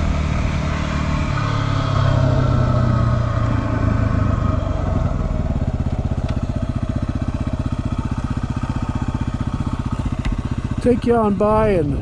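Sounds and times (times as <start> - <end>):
motorcycle engine running: 0.0 - 12.0.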